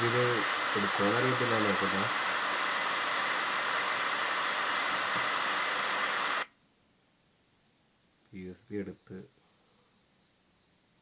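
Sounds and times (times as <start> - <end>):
radio static hissing: 0.0 - 6.6.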